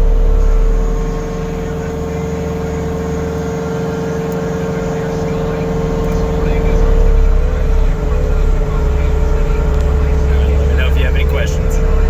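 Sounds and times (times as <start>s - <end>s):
diesel engine rumbling: 0.0s - 12.0s.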